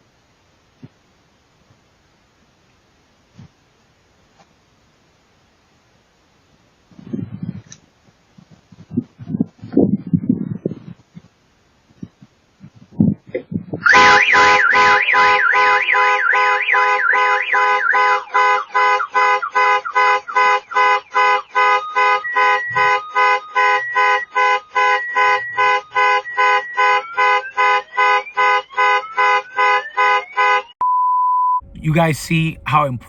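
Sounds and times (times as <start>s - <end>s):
car alarm siren: 13.8s - 30.8s.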